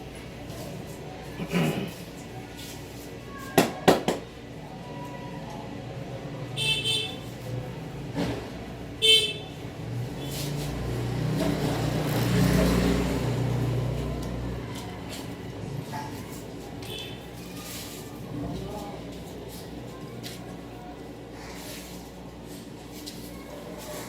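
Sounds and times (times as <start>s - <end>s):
vehicle engine: 7.2s - 19.8s.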